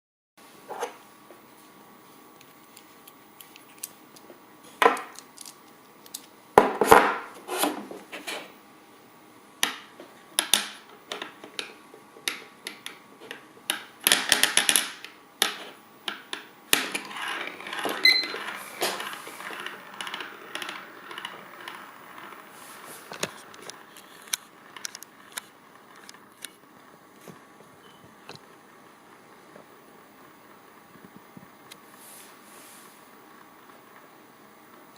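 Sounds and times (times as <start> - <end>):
spinning top rattling: 16.7 - 26.4.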